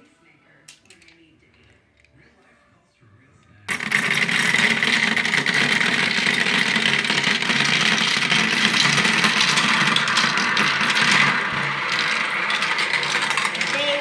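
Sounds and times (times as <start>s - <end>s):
marble rolling on plastic track: 3.7s - 14.0s.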